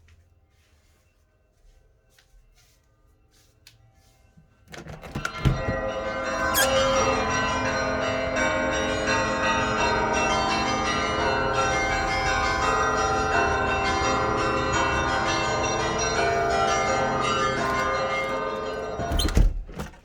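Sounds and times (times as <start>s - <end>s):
church bells pealing: 4.7s - 19.4s.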